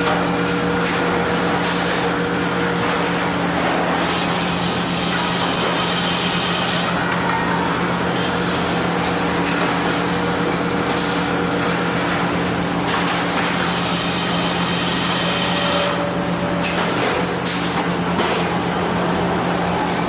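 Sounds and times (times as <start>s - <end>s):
sawmill machinery hum: 0.0s - 20.0s
faint machine whines: 13.5s - 16.7s.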